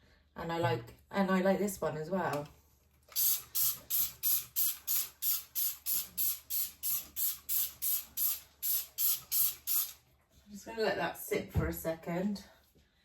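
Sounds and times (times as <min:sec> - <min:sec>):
spray bottle squirting: 0:03.1 - 0:10.0.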